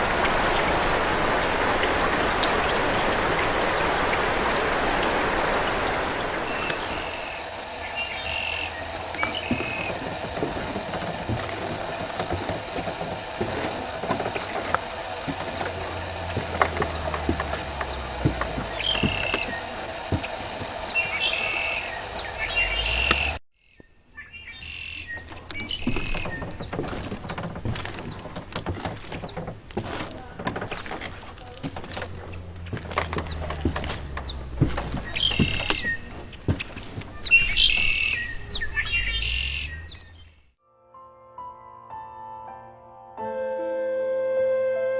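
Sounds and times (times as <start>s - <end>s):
stream burbling over stones: 0.0s - 23.4s
songbirds chirping: 0.0s - 40.6s
bird warbling song: 0.3s - 28.4s, 30.2s - 40.5s
scattered clicks: 6.5s - 23.4s
low steady rumble: 30.8s - 37.5s.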